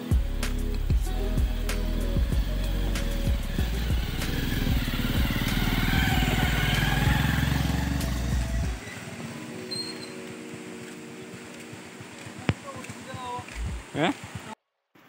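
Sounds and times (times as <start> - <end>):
off-road vehicle engine running hard: 0.0 - 9.3
background music: 0.0 - 14.1.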